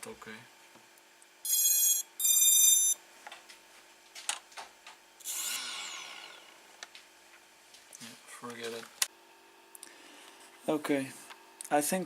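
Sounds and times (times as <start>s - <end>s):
high electronic beeps: 1.5s - 3.0s, 5.2s - 6.5s.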